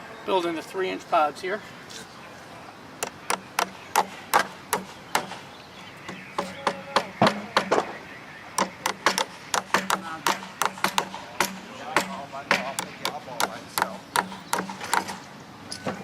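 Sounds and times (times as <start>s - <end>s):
hammering on wooden racks: 3.0s - 5.5s, 6.1s - 8.0s, 8.6s - 16.0s.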